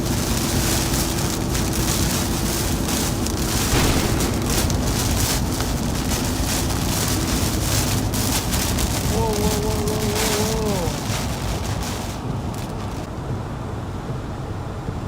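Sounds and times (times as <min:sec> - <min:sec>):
heavy rain: 0:00.0 - 0:13.1
faint vehicle hum: 0:00.0 - 0:15.0
storm wind rushing: 0:00.1 - 0:10.3.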